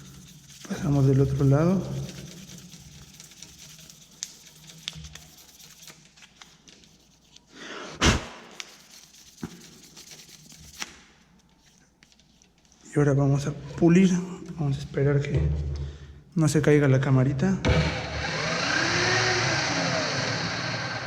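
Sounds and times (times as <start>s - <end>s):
sandpaper scratching plastic: 0.0s - 12.8s.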